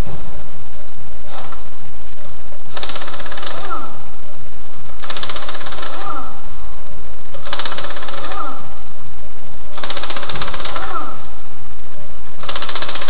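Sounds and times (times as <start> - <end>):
pneumatic impact wrench rattling: 5.0 - 6.0, 12.4 - 13.0.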